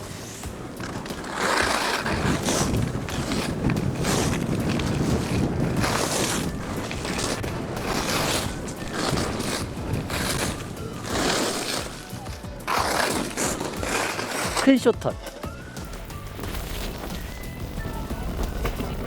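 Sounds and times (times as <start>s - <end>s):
strong wind buffeting microphone: 0.0s - 12.0s, 17.0s - 19.0s
skis hissing over snow: 0.0s - 15.0s.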